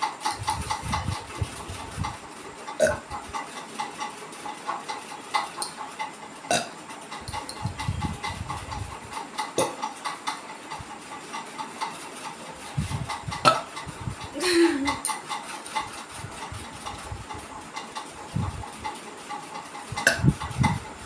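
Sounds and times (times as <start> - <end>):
woman burping: 14.4 - 15.0.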